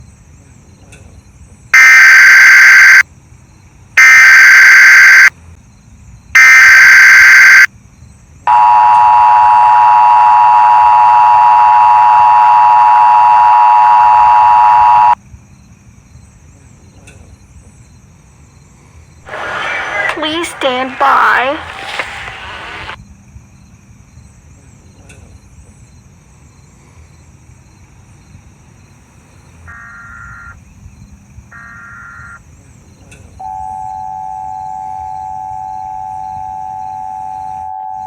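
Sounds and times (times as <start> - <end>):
data bursts: 1.8 - 3.0, 4.0 - 5.3, 6.4 - 7.7, 8.5 - 15.2
two-tone attention signal: 1.8 - 3.0, 4.0 - 5.3, 6.4 - 7.7, 8.5 - 15.2.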